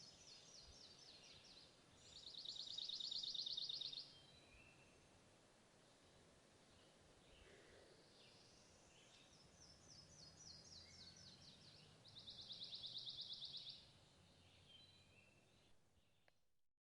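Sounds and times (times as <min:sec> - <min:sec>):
sparrow singing trill: 0:00.0 - 0:04.9, 0:08.3 - 0:15.6.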